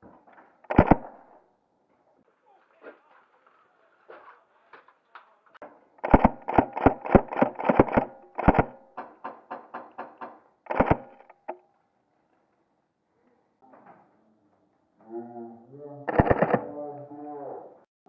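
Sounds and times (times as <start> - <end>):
airsoft rifle shots: 0.6 - 1.4, 6.0 - 11.5, 16.1 - 16.6.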